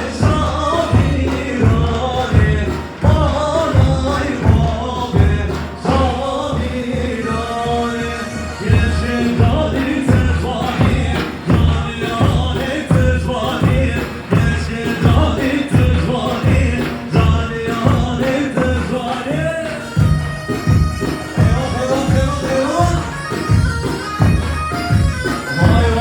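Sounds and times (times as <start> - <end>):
steady drum beat: 0.0 - 26.0
reedy wind instrument melody: 5.7 - 11.9, 19.1 - 26.0.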